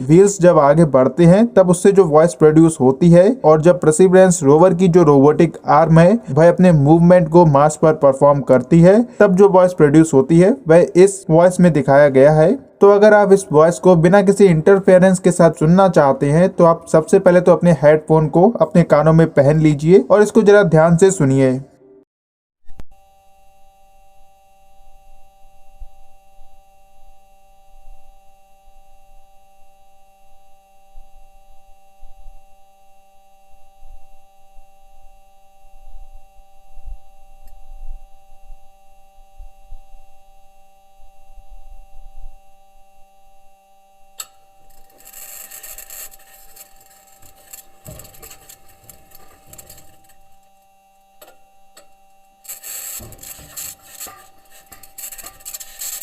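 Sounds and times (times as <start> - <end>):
high-pitched electrical tones: 0.0 - 22.0, 22.9 - 56.0
metal wheels grinding over rock: 44.7 - 50.3, 52.4 - 56.0.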